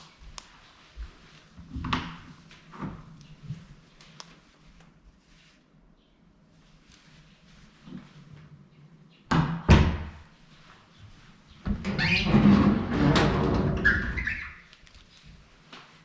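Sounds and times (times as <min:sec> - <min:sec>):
door rumbling slide: 0:11.8 - 0:14.5.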